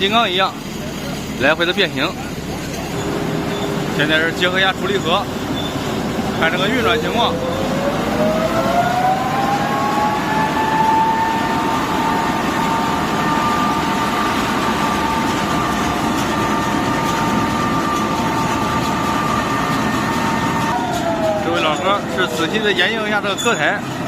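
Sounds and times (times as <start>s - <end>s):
harvester machine din: 0.0s - 24.0s
high multi-tone whine: 0.0s - 24.0s.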